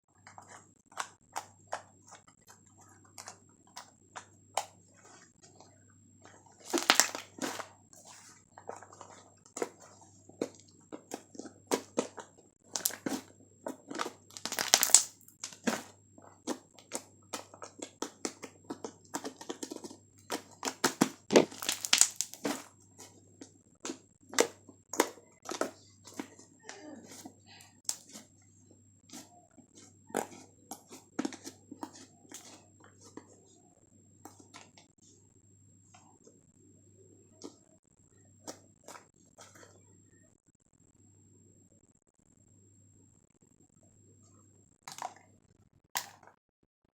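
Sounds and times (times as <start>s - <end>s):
slime squished by hand: 6.6s - 13.2s, 13.8s - 15.9s, 19.6s - 22.7s.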